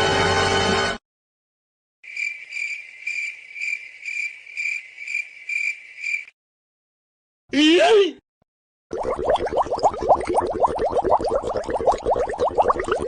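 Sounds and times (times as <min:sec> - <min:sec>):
crickets chirping: 0:02.0 - 0:06.3.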